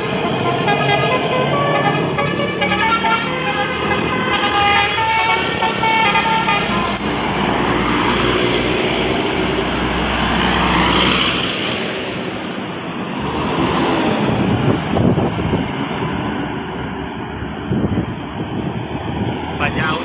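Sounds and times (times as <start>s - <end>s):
bus horn playing melody: 0.0s - 7.0s
bus passing: 0.0s - 20.0s
passing traffic: 0.0s - 20.0s.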